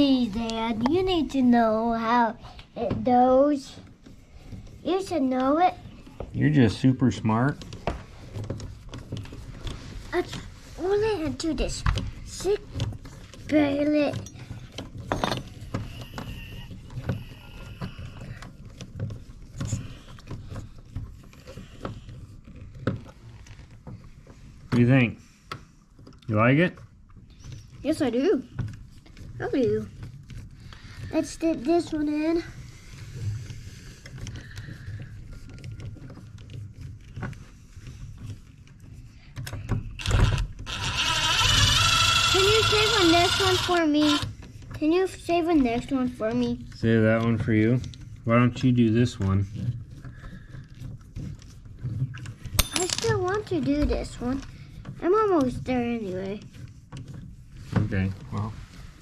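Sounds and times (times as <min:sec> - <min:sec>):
scraping rustle: 0:00.0 - 0:59.0
handling noise: 0:41.4 - 0:59.0.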